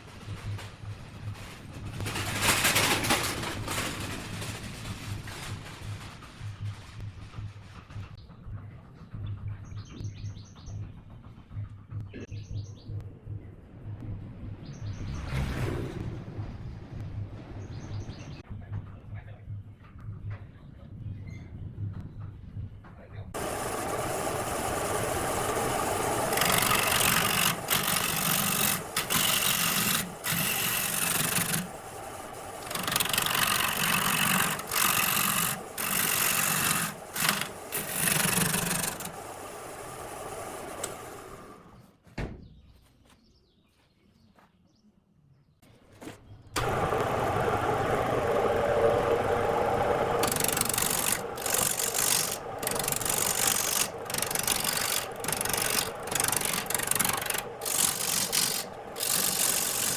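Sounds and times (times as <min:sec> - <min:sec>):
tool scraping spinning wood: 0:23.4 - 0:41.8, 0:45.9 - 0:59.9
wood lathe running: 0:23.4 - 0:41.8, 0:46.6 - 0:59.9.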